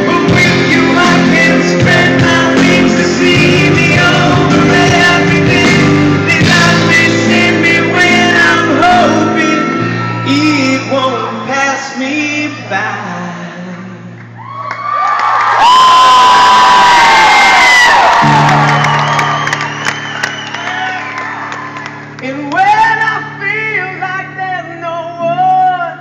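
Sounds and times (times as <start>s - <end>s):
live rock band playing: 0.0s - 11.5s, 18.2s - 24.5s.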